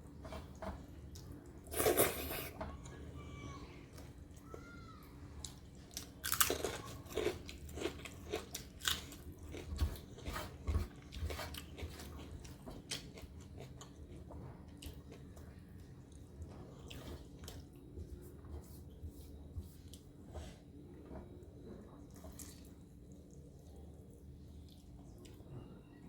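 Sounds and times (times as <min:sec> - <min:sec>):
person crunching fried food: 0:05.9 - 0:10.3.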